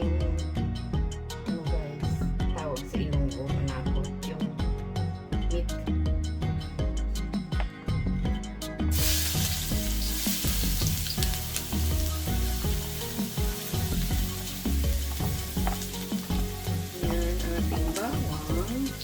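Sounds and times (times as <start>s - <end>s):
background music: 0.0s - 19.0s
garlic sizzling in oil: 8.9s - 19.0s.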